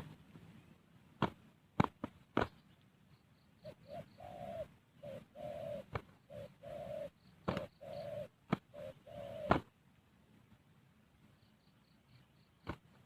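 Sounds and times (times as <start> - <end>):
dove cooing: 3.6 - 9.7.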